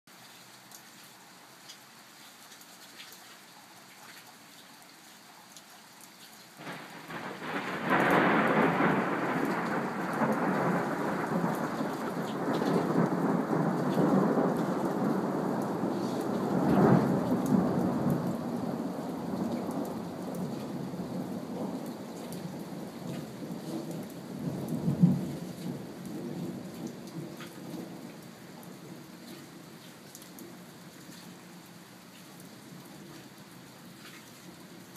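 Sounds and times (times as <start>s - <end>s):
thunder rolling: 6.6s - 26.7s.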